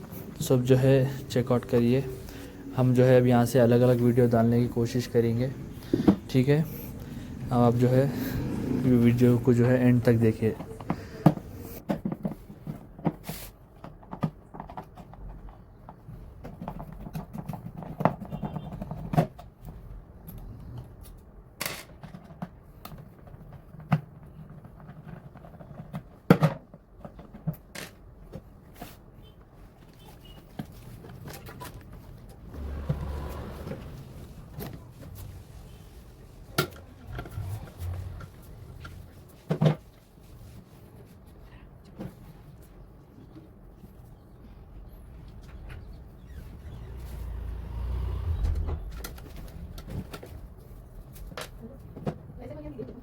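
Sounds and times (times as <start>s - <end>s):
rustling and scraping: 0.0s - 19.9s, 22.0s - 52.0s
parts clicking and knocking: 3.0s - 8.0s.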